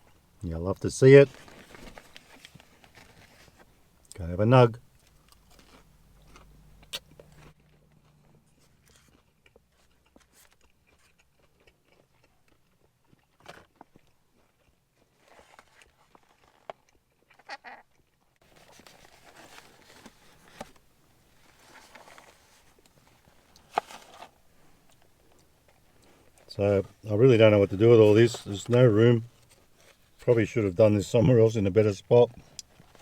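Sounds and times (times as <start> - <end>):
person biting and chewing: 5.0 - 18.2
mouth clicks and smacks: 6.8 - 7.4.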